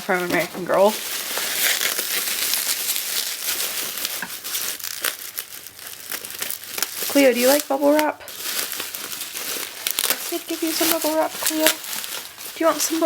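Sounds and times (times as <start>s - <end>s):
bubble wrap crinkling: 0.0s - 13.0s
sharp crackles: 0.0s - 13.0s.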